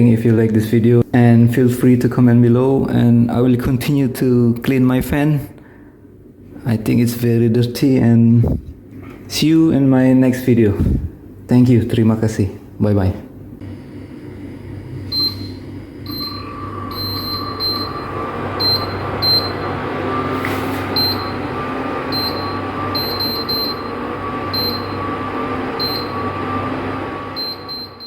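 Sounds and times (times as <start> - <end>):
machine hum and whine: 13.3 - 28.0
short high-pitched beeps: 15.2 - 19.6, 21.0 - 21.4, 22.1 - 23.9, 27.4 - 28.0.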